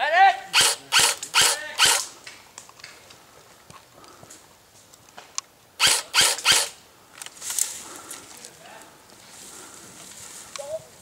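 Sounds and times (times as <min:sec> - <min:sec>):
airsoft rifle shots: 0:00.5 - 0:02.1, 0:05.8 - 0:06.8.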